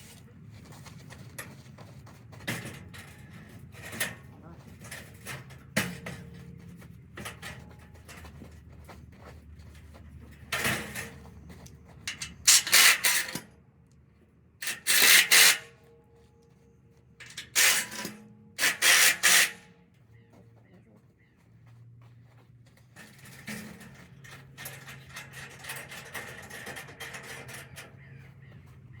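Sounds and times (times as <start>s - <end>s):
scraping and rubbing bursts: 12.2s - 13.4s, 14.6s - 15.8s, 17.4s - 19.6s.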